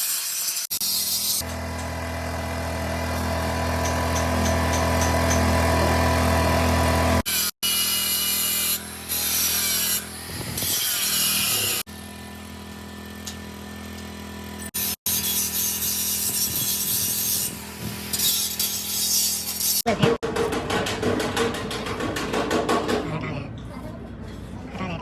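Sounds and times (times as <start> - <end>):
power tool grinding metal: 0.0 - 19.8.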